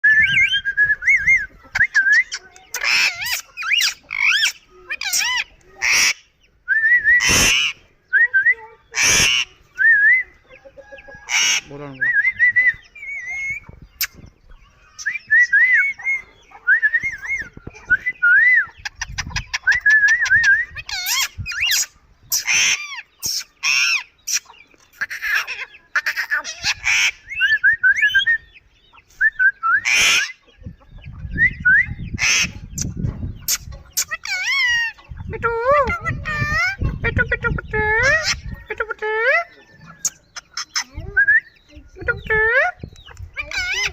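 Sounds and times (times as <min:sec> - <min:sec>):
parakeets warbling whistles: 0:00.0 - 0:28.6, 0:29.3 - 0:35.1, 0:43.0 - 0:43.9
parakeets harsh screeches: 0:02.8 - 0:06.2, 0:07.2 - 0:07.8, 0:09.0 - 0:09.5, 0:20.9 - 0:24.4.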